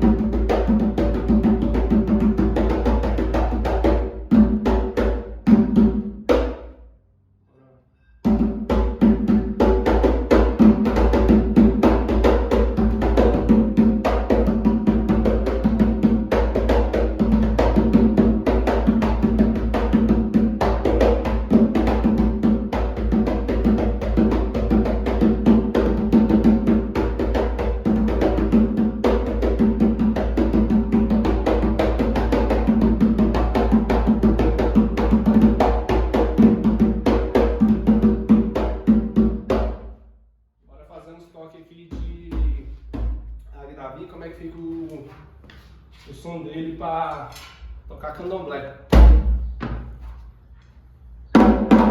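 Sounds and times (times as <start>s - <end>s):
hand drum rhythm: 0.0s - 6.6s, 8.2s - 39.9s, 51.4s - 51.9s.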